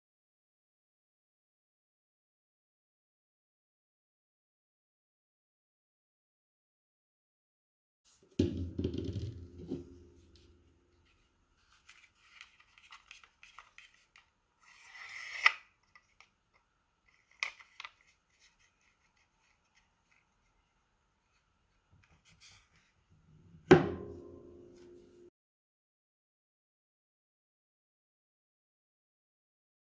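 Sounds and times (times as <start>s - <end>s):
loud knock with ringing: 23.7s - 24.6s.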